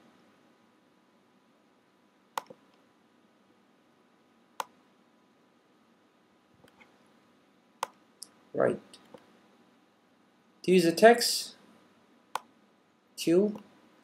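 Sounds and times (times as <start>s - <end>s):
computer mouse clicking: 2.4s - 2.8s.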